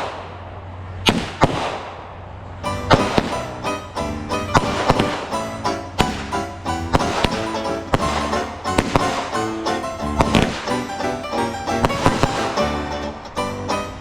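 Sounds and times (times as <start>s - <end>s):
firework bangs: 1.0s - 2.1s, 2.7s - 12.9s.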